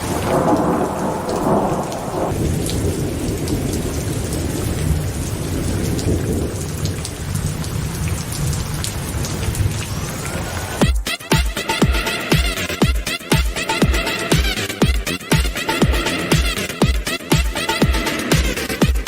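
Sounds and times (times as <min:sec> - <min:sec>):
rumbling thunder: 0:00.0 - 0:10.1
heavy rain: 0:00.0 - 0:11.0, 0:11.6 - 0:19.0.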